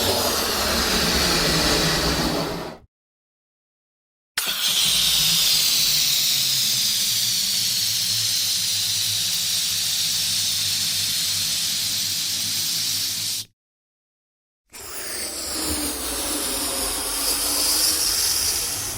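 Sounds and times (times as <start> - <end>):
balloon inflator air hiss: 4.4 - 13.5, 16.2 - 18.9.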